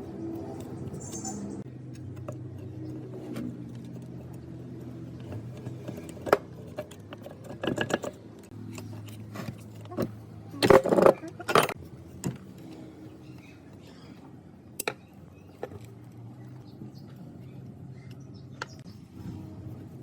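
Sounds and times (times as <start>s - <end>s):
metal parts clinking and knocking: 0.6s - 12.5s.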